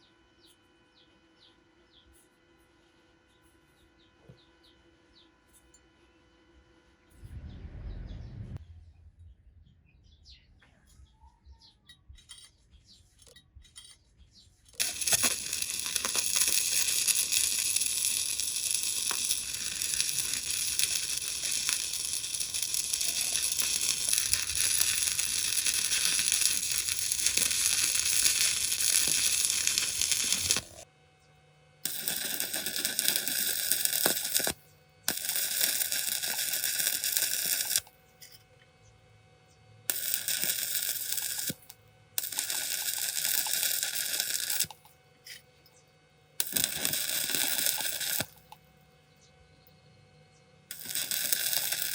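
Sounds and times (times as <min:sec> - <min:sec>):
welding arc crackling: 0:14.7 - 0:30.9, 0:31.8 - 0:38.0, 0:39.9 - 0:44.9, 0:46.4 - 0:48.6, 0:50.7 - 0:51.9.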